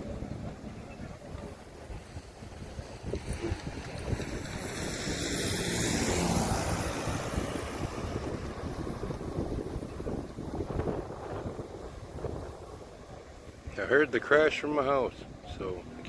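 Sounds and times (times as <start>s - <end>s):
wind buffeting microphone: 0.0s - 16.0s
motor vehicle passing by: 1.9s - 12.9s.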